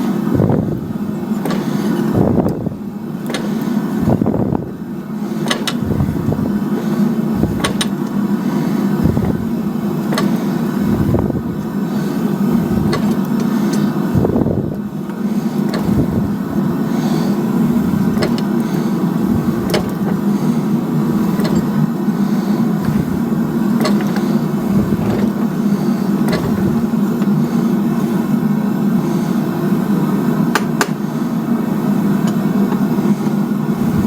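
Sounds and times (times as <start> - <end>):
sharp metal clicks and knocks: 5.4 - 6.0, 7.4 - 8.2, 18.1 - 18.8, 21.4 - 21.8.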